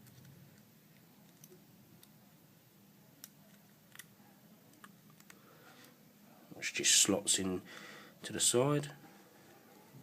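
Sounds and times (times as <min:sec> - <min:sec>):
small plastic parts clicking: 0:00.0 - 0:02.2, 0:03.2 - 0:05.4.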